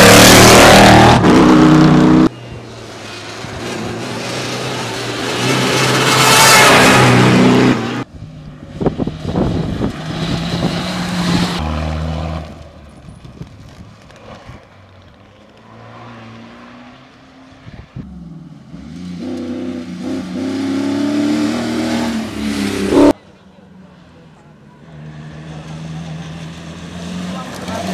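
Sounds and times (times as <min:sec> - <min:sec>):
engine revving: 0:00.0 - 0:02.3, 0:03.4 - 0:08.1, 0:18.0 - 0:23.2
rally car engines passing: 0:00.0 - 0:27.9.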